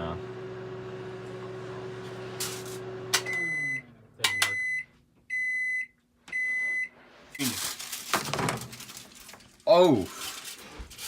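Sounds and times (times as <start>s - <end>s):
microwave oven humming: 0.0s - 7.2s
microwave beeps: 2.8s - 7.5s
microwave click: 3.0s - 3.5s.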